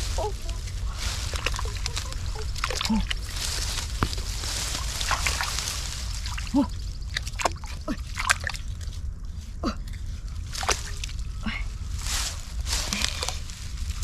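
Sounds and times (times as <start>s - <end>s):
muddy water sloshing: 0.0s - 9.0s, 10.5s - 11.4s.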